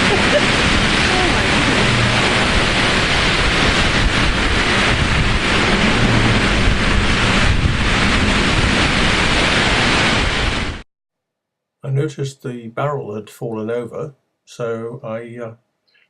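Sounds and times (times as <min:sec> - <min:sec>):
strong wind rushing: 0:00.0 - 0:10.8
wind buffeting microphone: 0:00.0 - 0:10.8.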